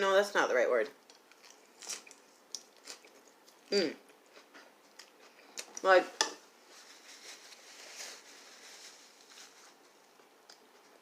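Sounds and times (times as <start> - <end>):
chewing crunchy salad: 1.0 - 5.8.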